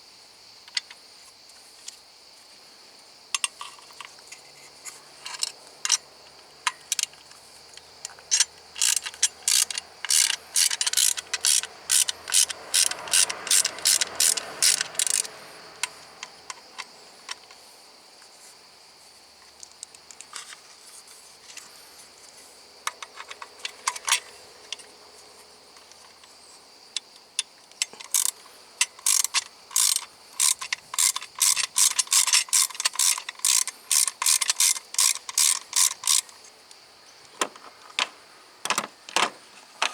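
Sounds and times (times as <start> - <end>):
ratchet wrench clicking: 7.8 - 16.9, 27.8 - 36.4.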